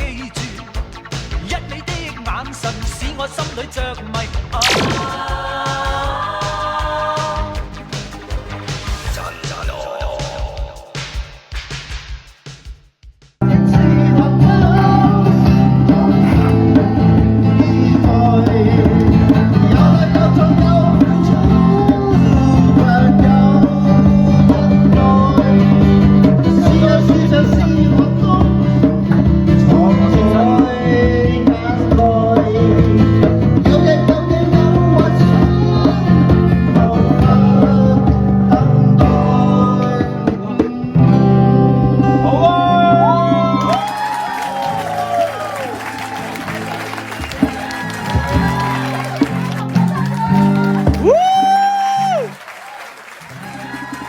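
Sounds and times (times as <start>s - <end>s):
guitar-led band music: 0.0s - 10.6s, 13.4s - 52.3s
heavy bass line: 0.0s - 10.8s, 13.4s - 39.7s.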